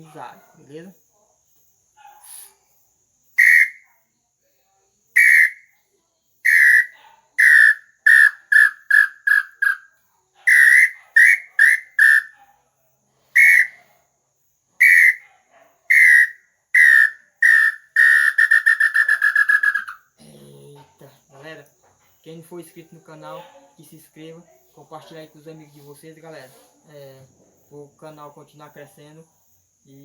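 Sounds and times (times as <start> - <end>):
bird-call whistle notes: 3.4 - 3.9, 5.2 - 5.7, 6.5 - 9.9, 10.5 - 12.3, 13.4 - 13.8, 14.8 - 15.2, 15.9 - 20.0.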